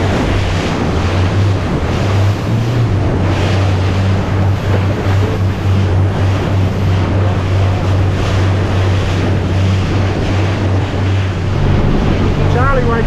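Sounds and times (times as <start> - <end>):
boat engine running: 0.0 - 13.0
rushing water: 0.0 - 13.0
wind buffeting microphone: 0.0 - 13.0.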